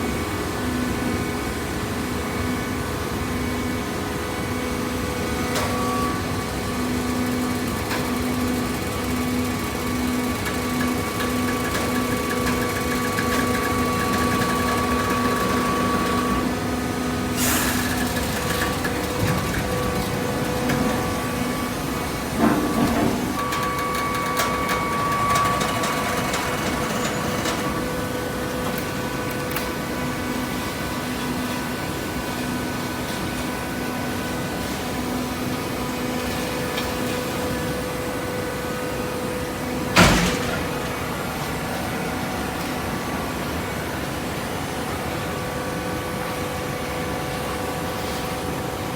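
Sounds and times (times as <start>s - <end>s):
baling press machine hum: 0.0s - 48.9s
machine clunks: 10.5s - 27.9s, 39.9s - 41.7s.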